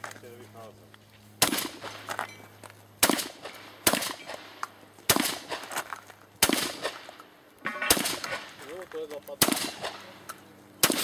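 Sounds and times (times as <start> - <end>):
shotgun shots: 1.4 - 2.1, 3.0 - 5.8, 6.4 - 8.6, 9.4 - 11.0.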